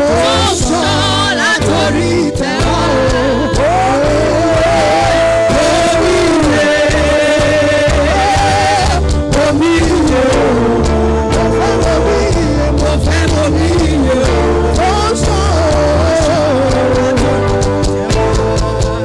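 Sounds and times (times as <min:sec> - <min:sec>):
steady bass: 0:00.0 - 0:19.0.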